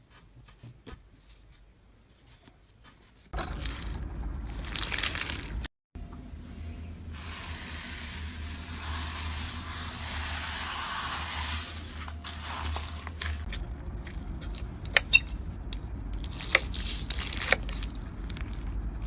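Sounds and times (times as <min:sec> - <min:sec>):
slime squishing and crackling: 0:03.3 - 0:05.7, 0:16.2 - 0:19.0.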